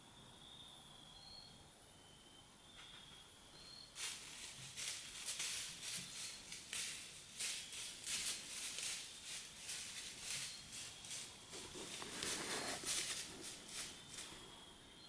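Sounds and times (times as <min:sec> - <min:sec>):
crunching in dry leaves: 0:04.0 - 0:14.6.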